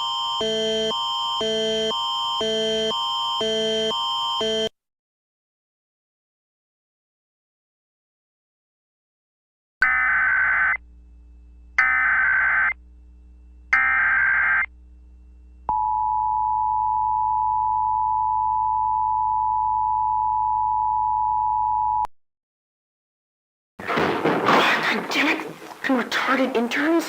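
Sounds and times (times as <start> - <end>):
two-tone alert signal: 0.0 - 4.7.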